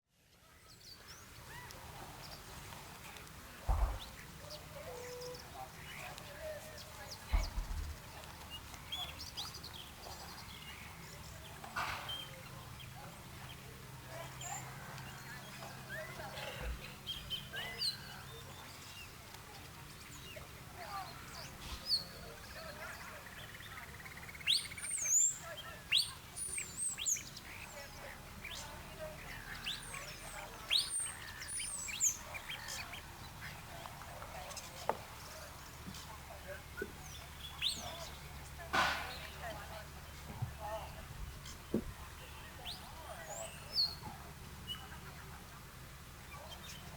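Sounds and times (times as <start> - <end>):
birds calling: 3.7 - 45.2
bird chirps and calls: 21.1 - 33.6, 36.8 - 39.4.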